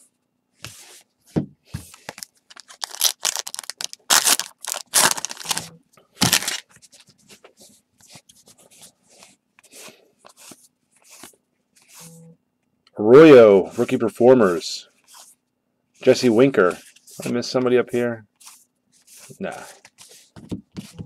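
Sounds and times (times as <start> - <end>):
cards rustling: 1.9 - 7.2
wrapper tearing and crinkling: 2.5 - 6.6.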